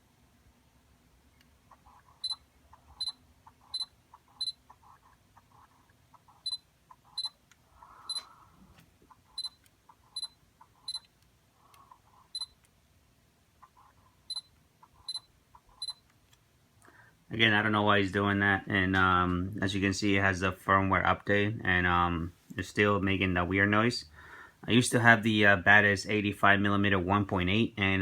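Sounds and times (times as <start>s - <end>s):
high focus beeps: 3.8s - 4.6s, 7.2s - 7.4s, 8.1s - 8.3s, 10.2s - 11.1s, 12.4s - 12.6s, 15.1s - 16.0s.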